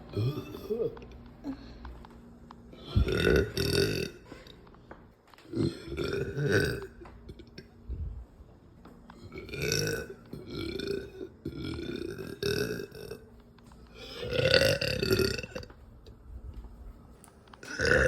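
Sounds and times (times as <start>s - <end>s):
woman belching: 0.1s - 1.0s, 2.8s - 4.2s, 5.5s - 7.7s, 9.3s - 13.2s, 14.0s - 15.7s, 17.6s - 18.0s.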